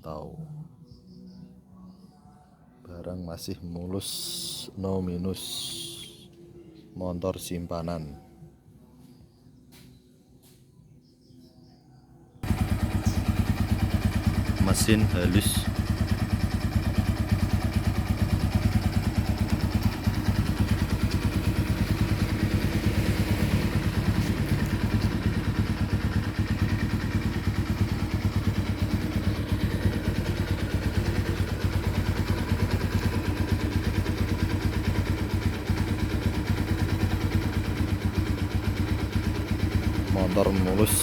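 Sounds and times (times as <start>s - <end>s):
motorcycle engine idling: 3.4s - 6.2s, 12.4s - 41.0s.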